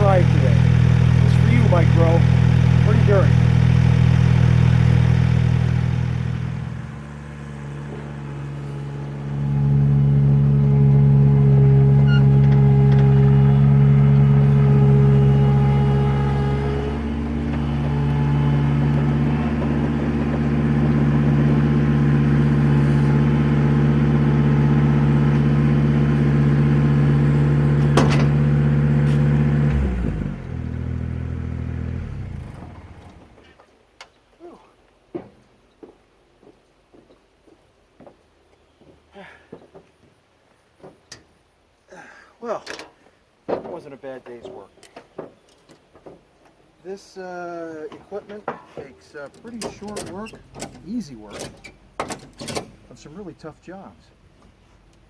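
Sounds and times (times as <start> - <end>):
tractor engine running: 0.0 - 33.7, 47.8 - 55.0.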